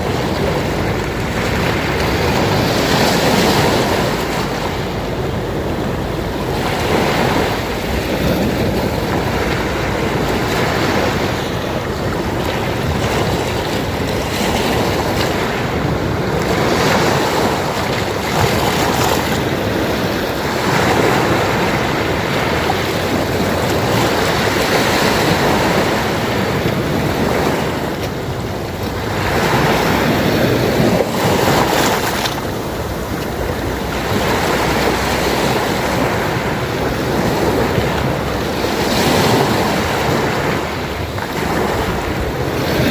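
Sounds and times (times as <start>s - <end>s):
sea waves washing ashore: 0.0s - 42.9s.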